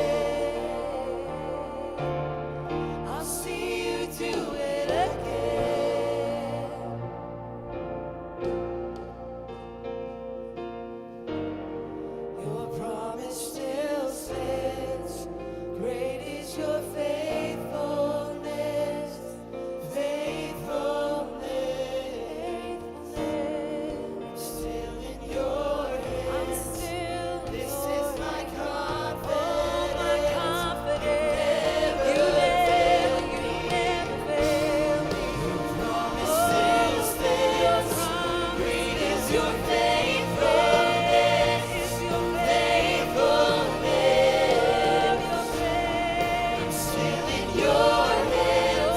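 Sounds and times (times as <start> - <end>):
group of voices singing: 0.0 - 7.8, 12.2 - 48.9.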